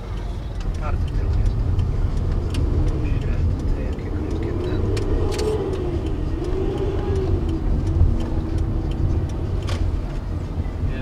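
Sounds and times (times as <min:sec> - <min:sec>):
car road noise rumble: 0:00.0 - 0:11.0
engine hum: 0:00.0 - 0:11.0.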